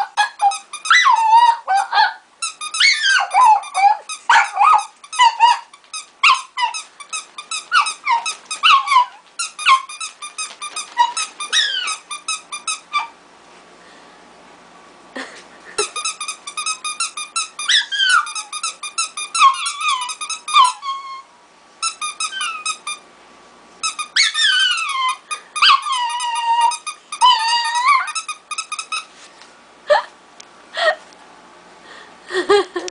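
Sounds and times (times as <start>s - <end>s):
pet animal squeaking: 0.0s - 13.2s, 15.8s - 23.0s, 23.8s - 29.1s.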